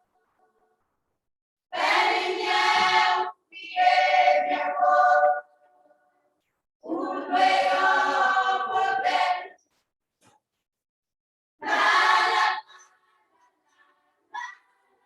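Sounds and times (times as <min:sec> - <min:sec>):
group of voices singing: 0:01.7 - 0:05.5, 0:06.8 - 0:09.6, 0:11.6 - 0:14.7.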